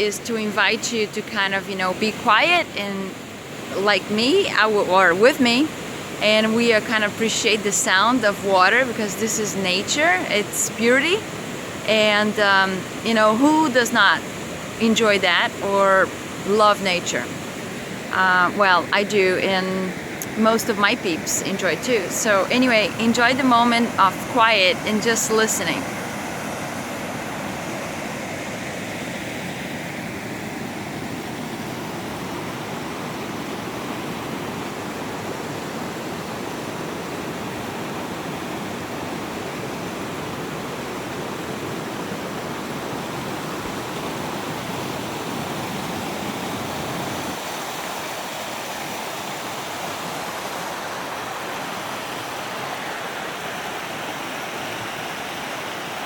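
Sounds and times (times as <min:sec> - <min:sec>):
small waterfall rushing: 0:00.0 - 0:56.0.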